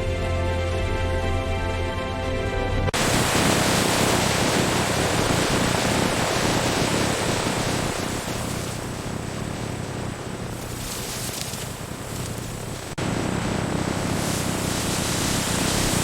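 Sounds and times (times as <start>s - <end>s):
music: 0.0s - 3.0s.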